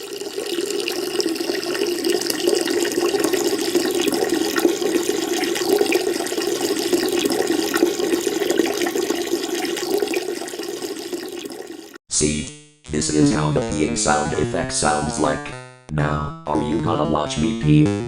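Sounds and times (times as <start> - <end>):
liquid stream into toilet water: 0.0 - 12.0.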